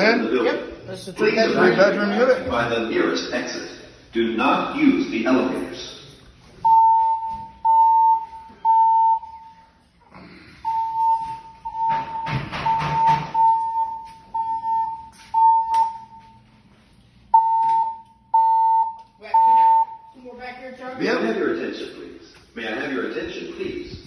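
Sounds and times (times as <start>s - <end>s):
fire alarm pulsing beeps: 6.6s - 9.8s, 10.6s - 16.6s, 17.3s - 20.4s
clattering noise: 11.8s - 13.5s.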